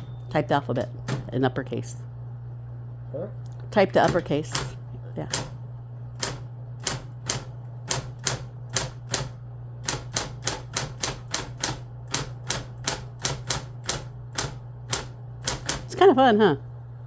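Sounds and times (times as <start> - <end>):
steady low hum: 0.0 - 17.0
typewriter keys clacking: 4.0 - 5.6, 6.2 - 16.0.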